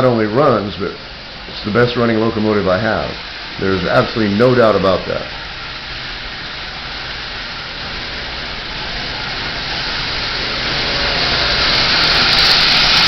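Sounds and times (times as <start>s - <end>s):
toy train motor hum: 0.0s - 13.0s
train wheels rumbling on track: 9.4s - 13.0s.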